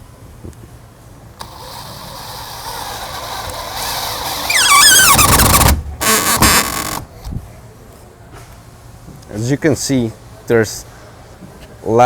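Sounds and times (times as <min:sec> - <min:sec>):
power drill running: 0:01.4 - 0:07.0
screw squealing in wood: 0:01.4 - 0:07.2.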